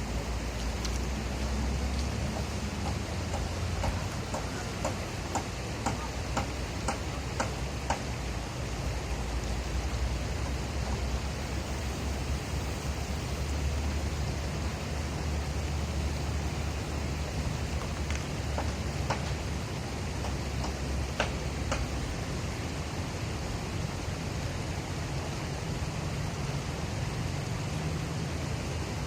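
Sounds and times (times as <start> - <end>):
rushing outdoor noise: 0.0 - 29.0
sharp ticks: 2.0 - 8.1, 20.2 - 22.0.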